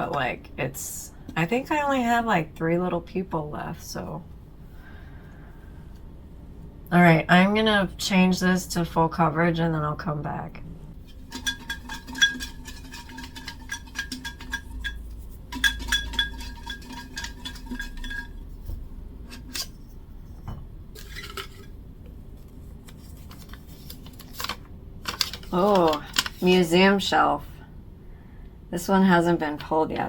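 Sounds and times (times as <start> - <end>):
metal cocktail shaker rattling: 11.0 - 18.5, 21.0 - 21.7.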